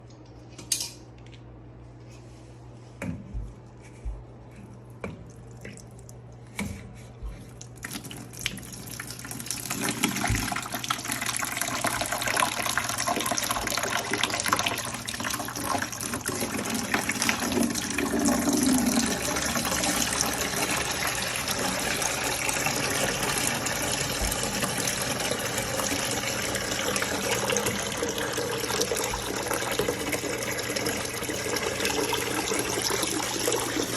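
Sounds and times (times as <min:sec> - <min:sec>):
steady low hum: 0:00.0 - 0:09.4.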